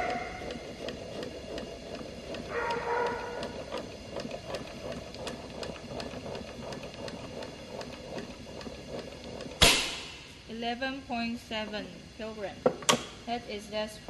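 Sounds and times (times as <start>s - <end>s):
mechanical ticking: 0.0s - 10.0s.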